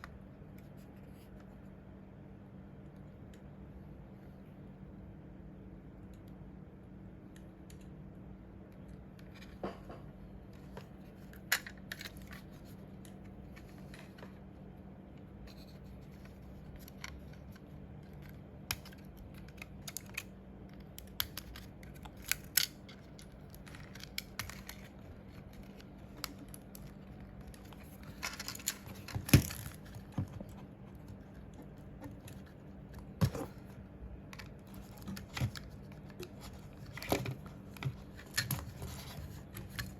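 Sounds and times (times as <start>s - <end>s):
low steady hum: 0.0s - 39.9s
plastic mouse parts clicking: 15.5s - 39.9s.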